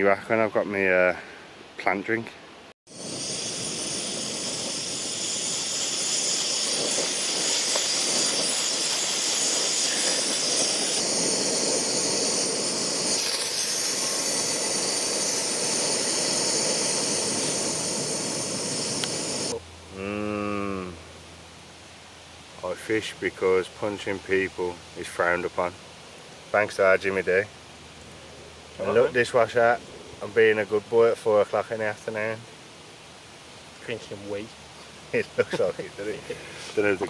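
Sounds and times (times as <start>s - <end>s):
kettle hissing steam: 2.9s - 21.0s, 33.8s - 37.0s.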